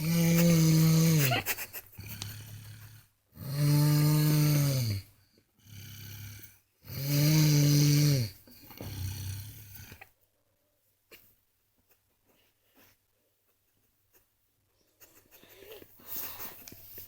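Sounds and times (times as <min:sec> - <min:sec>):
boy snoring: 0:00.0 - 0:10.1.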